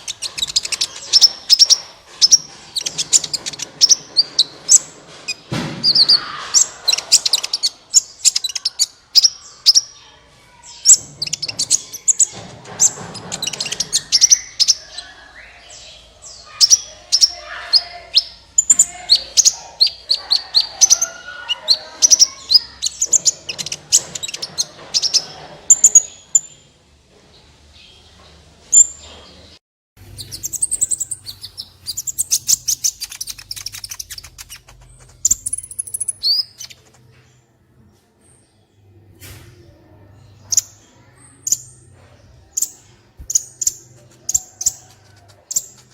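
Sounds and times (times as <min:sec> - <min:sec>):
bird singing high chirps and trills: 0:00.0 - 0:26.6, 0:30.0 - 0:37.0.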